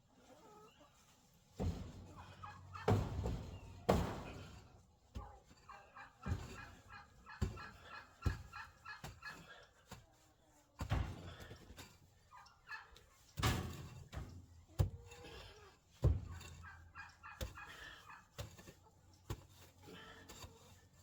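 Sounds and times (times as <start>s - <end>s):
poultry calling: 5.7s - 9.5s, 16.6s - 18.3s.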